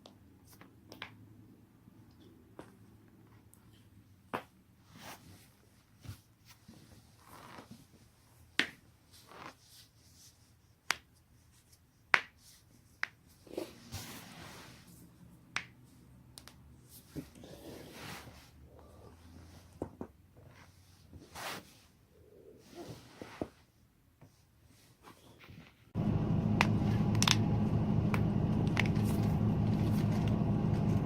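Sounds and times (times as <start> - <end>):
soft scuffing noise: 13.6 - 15.1, 20.5 - 22.0.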